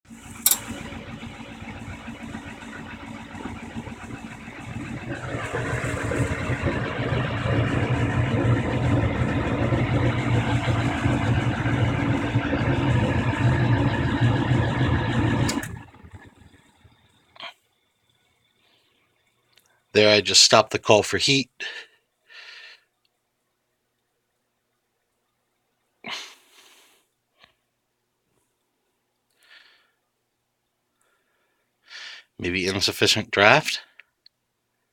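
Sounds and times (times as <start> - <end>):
gas furnace rushing: 0.0 - 16.9
low hum: 0.1 - 17.3.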